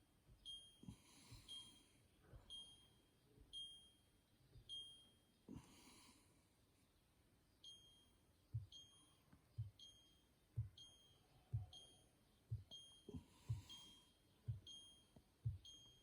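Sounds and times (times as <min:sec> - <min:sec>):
faint high electronic beeps: 0:07.6 - 0:16.0.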